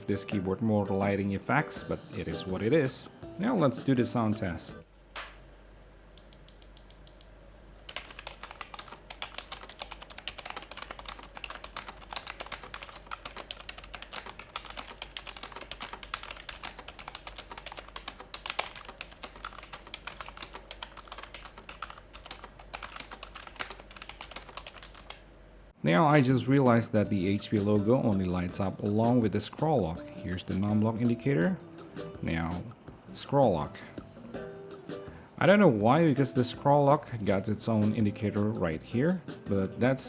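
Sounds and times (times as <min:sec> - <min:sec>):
keyboard typing: 0:06.2 - 0:07.3, 0:07.9 - 0:25.3.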